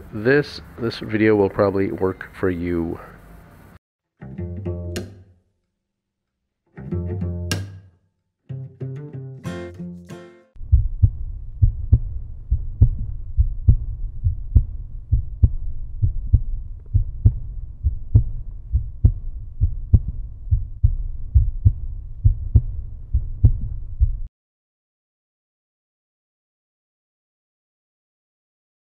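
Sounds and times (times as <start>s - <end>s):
heartbeat-like deep thuds: 10.6s - 24.3s.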